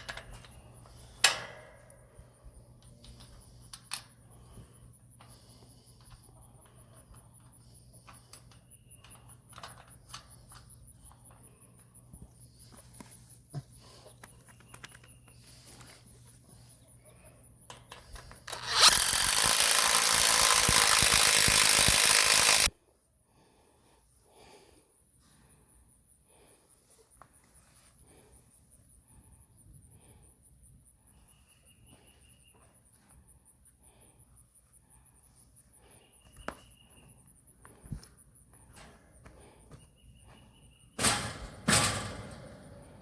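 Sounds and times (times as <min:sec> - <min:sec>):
metal fence panels clicking: 0:01.2 - 0:02.0, 0:41.0 - 0:43.0
power tool running: 0:18.5 - 0:22.7.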